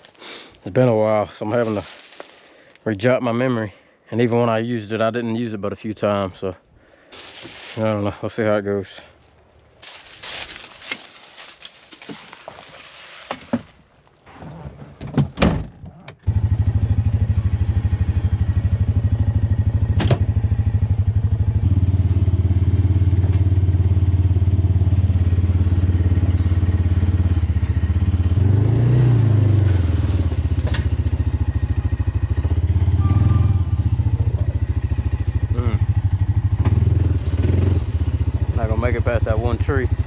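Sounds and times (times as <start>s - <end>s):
engine running: 16.2s - 40.0s.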